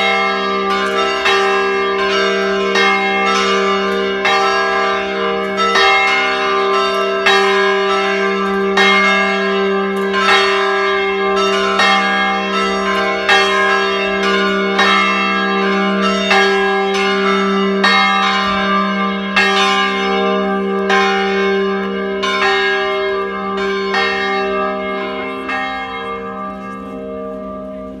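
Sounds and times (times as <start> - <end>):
church bells ringing: 0.0 - 28.0.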